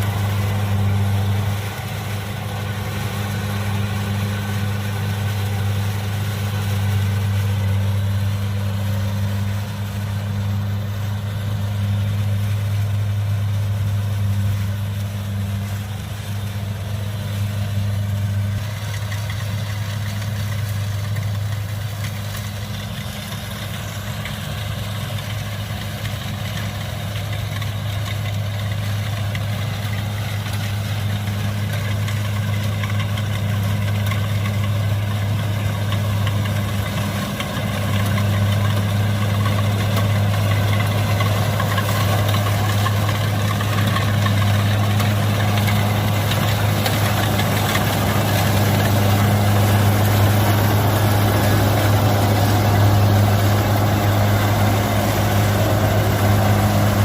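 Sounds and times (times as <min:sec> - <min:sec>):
combine harvester engine hum: 0:00.0 - 0:57.0.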